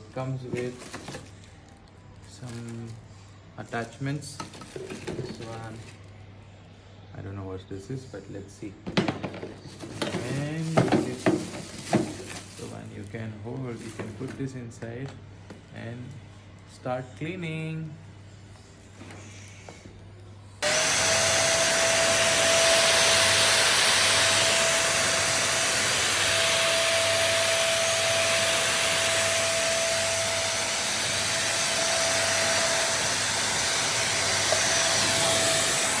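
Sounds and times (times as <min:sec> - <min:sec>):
vacuum cleaner running: 0:00.5 - 0:01.3, 0:04.4 - 0:05.9, 0:08.9 - 0:12.8, 0:20.6 - 0:36.0.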